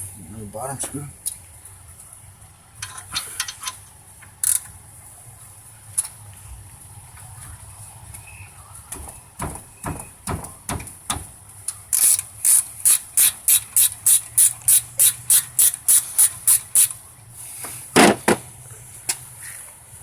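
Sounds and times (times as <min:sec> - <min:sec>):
ratchet wrench clicking: 0:04.4 - 0:04.6, 0:11.9 - 0:17.0
loud knock: 0:09.0 - 0:11.2.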